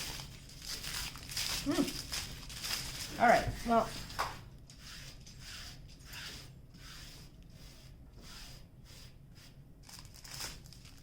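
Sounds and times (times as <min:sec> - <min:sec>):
plastic bags rustling: 0:00.0 - 0:04.2, 0:09.8 - 0:11.0.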